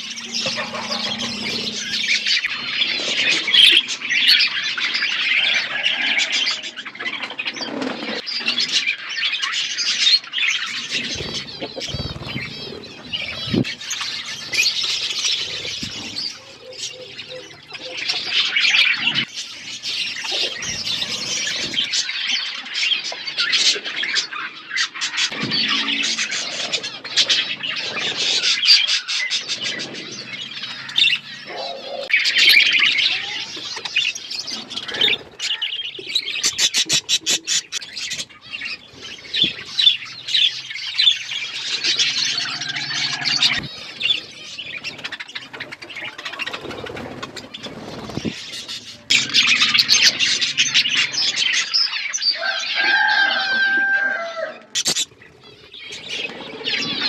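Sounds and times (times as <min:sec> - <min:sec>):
wings fluttering: 0:00.0 - 0:03.8, 0:09.8 - 0:22.3, 0:25.2 - 0:51.6, 0:54.7 - 0:57.0
budgerigars chattering: 0:00.0 - 0:52.4, 0:54.8 - 0:57.0.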